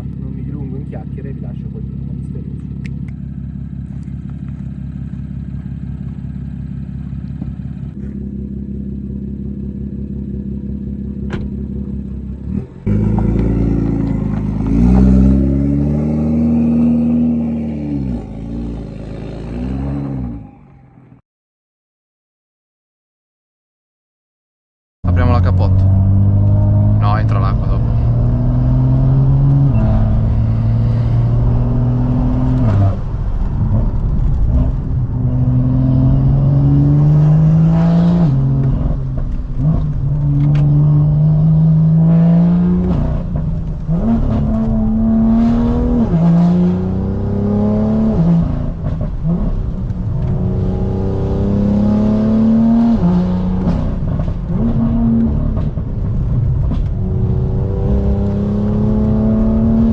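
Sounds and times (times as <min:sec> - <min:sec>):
car engine revving through gears: 0:07.3 - 0:20.6, 0:25.1 - 0:59.9
exhaust cracks: 0:29.3 - 0:35.8, 0:38.2 - 0:41.1, 0:42.7 - 0:46.2, 0:52.4 - 0:59.7.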